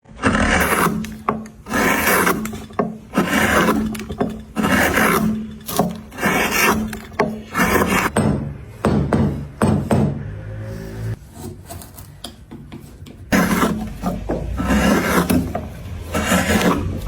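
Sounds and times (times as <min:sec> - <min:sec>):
hand tool scraping wood: 0:00.0 - 0:08.2, 0:09.6 - 0:17.0.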